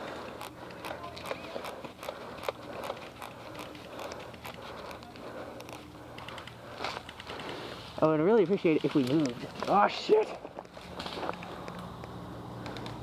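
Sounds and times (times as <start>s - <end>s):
steady rustle: 0.0s - 11.8s
sharp clicks and snaps: 0.3s - 7.6s, 10.6s - 13.0s.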